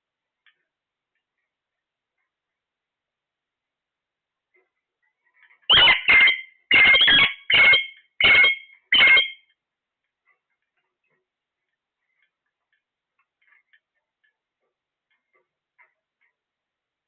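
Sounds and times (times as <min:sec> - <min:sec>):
parrot harsh calls: 0:05.7 - 0:09.4.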